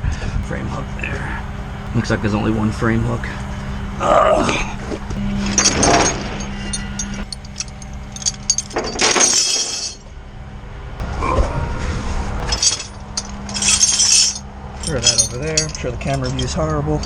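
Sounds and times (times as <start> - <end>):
steady low hum: 0.0 - 17.0
chains and metal hooks clanking: 5.2 - 10.1, 12.4 - 17.0.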